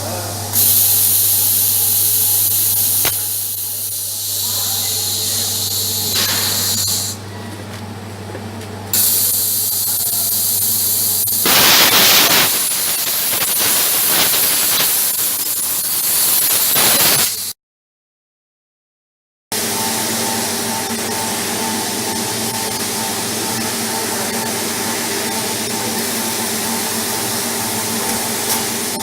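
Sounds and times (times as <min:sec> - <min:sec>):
electrical hum with hiss: 0:00.0 - 0:17.4
plasma arc cutting hiss: 0:00.5 - 0:07.2, 0:09.0 - 0:17.6, 0:19.6 - 0:29.0.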